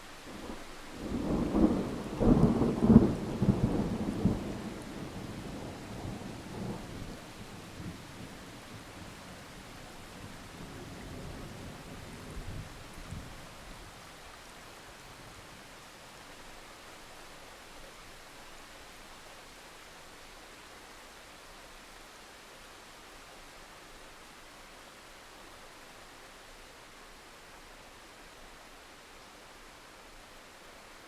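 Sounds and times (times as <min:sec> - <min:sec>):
steady rain: 0:00.0 - 0:31.0
thunder rumbling: 0:01.0 - 0:13.4.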